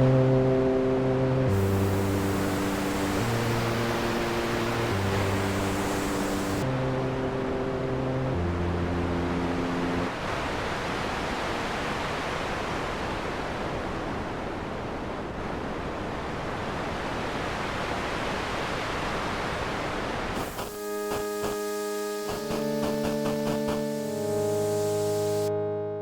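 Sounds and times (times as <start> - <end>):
music with sustained notes: 0.0 - 10.1, 20.6 - 26.0
steady rushing noise: 1.5 - 8.5, 9.1 - 25.5.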